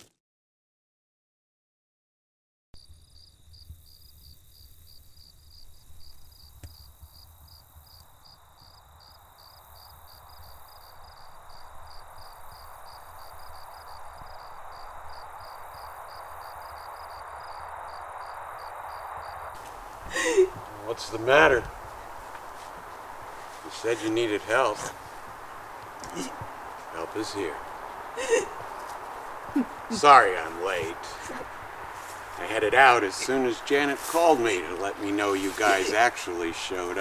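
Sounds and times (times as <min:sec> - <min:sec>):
crickets chirping: 0:02.8 - 0:37.0
hissing noise: 0:19.0 - 0:37.0.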